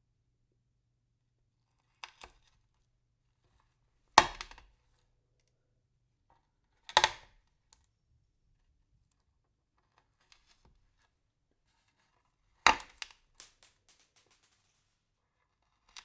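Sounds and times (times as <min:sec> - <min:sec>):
pills cracking and crunching: 0:12.8 - 0:15.0
pills clicking: 0:13.4 - 0:15.0.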